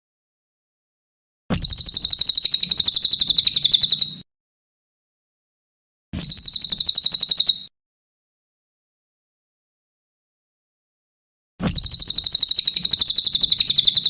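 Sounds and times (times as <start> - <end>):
songbird trilling: 1.6 - 4.2, 6.2 - 7.7, 11.6 - 14.0.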